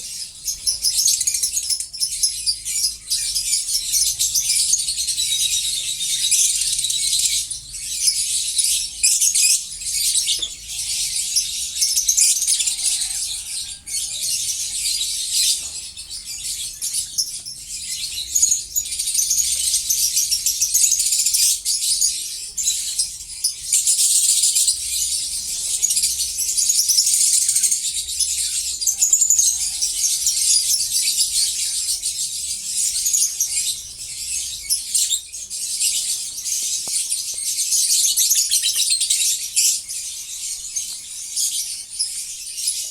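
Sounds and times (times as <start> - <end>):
lovebirds chattering and screeching: 0.0 - 42.9.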